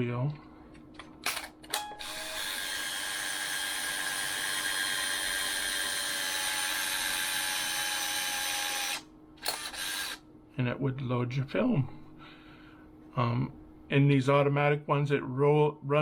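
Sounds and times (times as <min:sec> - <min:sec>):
camera motor whine: 0:02.0 - 0:10.2
camera sharp clicks: 0:09.4 - 0:10.2.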